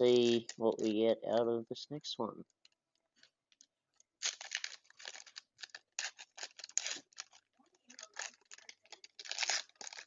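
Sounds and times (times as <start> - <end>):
foil wrapper crinkling: 2.6 - 10.0.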